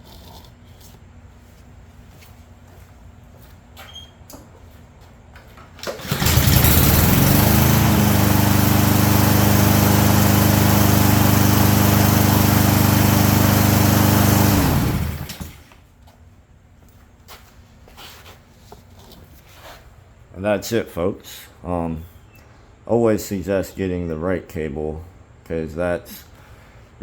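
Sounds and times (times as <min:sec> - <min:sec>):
lawn mower engine running: 0:05.7 - 0:15.7.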